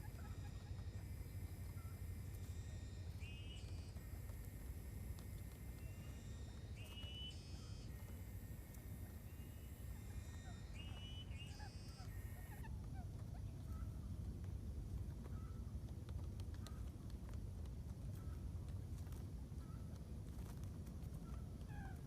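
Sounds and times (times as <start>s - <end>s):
quail calling: 0.0s - 4.5s, 5.2s - 13.9s.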